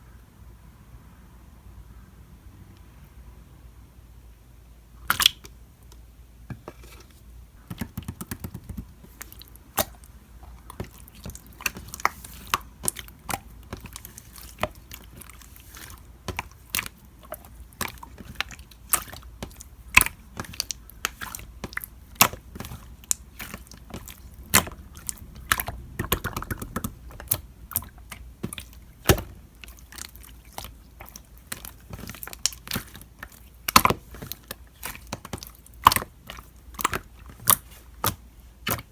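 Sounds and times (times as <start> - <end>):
slime air bubbles popping: 24.0 - 27.9.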